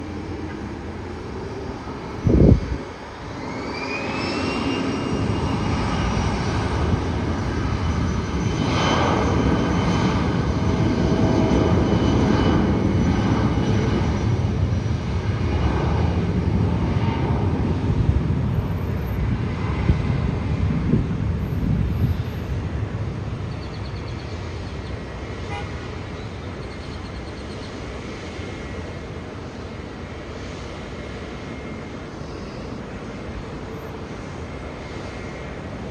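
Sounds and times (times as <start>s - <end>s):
jet engines spooling up: 0.0s - 17.9s.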